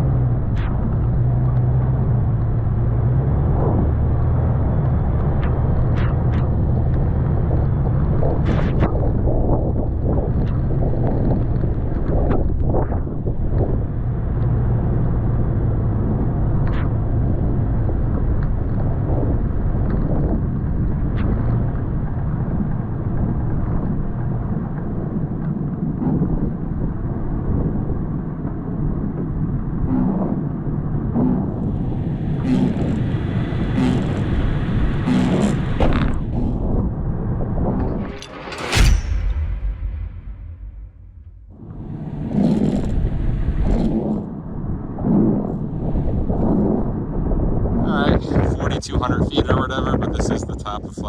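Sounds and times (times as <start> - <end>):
vehicle engine rumbling: 0.0 - 8.5, 30.8 - 43.6.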